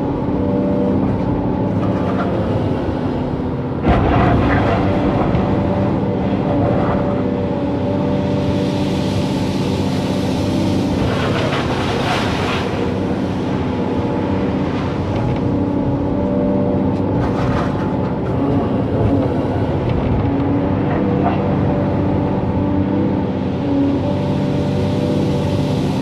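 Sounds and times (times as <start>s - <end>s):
diesel engine running: 0.0s - 26.0s
rushing scraping noise: 3.8s - 15.8s.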